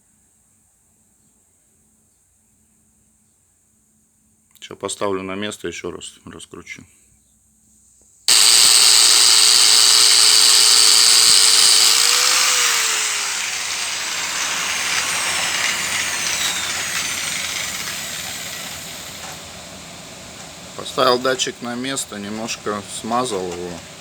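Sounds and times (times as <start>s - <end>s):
angle grinder running: 8.3s - 24.0s
wheel coasting with falling whine: 8.3s - 24.0s.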